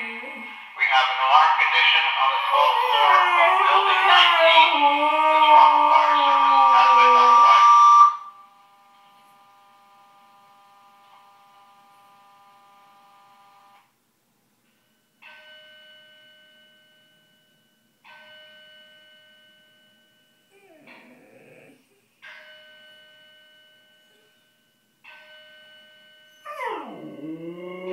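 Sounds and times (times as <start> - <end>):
dog howling: 2.2 - 7.6, 20.5 - 21.8, 26.4 - 27.9
shrill fire alarm: 2.2 - 13.8, 15.0 - 20.8, 22.2 - 27.9.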